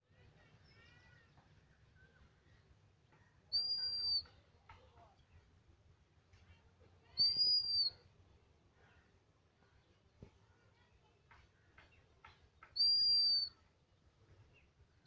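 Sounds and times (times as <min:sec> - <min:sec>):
faint bird chirps: 0:00.2 - 0:05.5, 0:06.4 - 0:10.9, 0:11.7 - 0:15.0
high whistled bird notes: 0:03.5 - 0:04.4, 0:07.1 - 0:08.0, 0:12.6 - 0:13.6.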